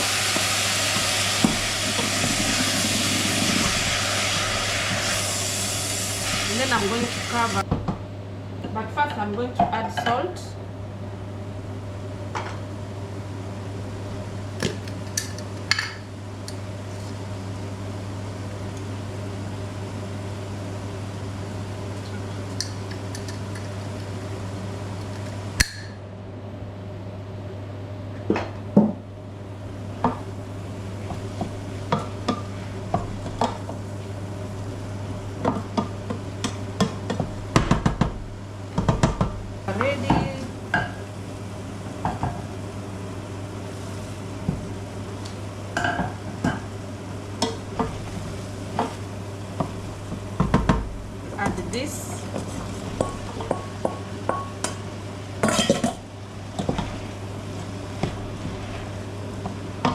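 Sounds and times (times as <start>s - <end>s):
pot hissing on stove: 0.0s - 7.7s, 38.2s - 59.8s.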